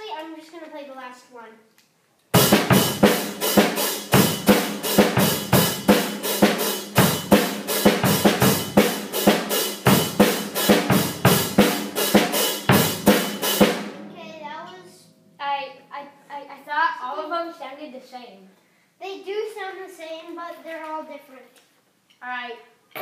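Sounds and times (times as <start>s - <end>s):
drum kit playing a beat: 2.4s - 15.2s.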